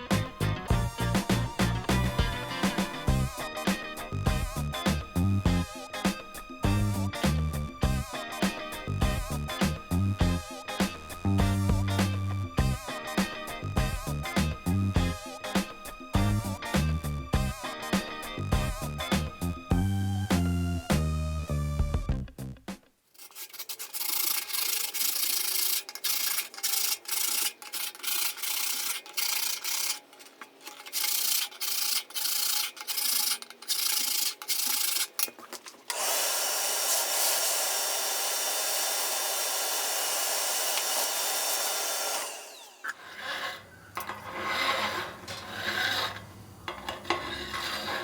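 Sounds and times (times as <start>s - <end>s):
cutter scraping firebrick: 23.1s - 36.0s, 40.7s - 48.0s.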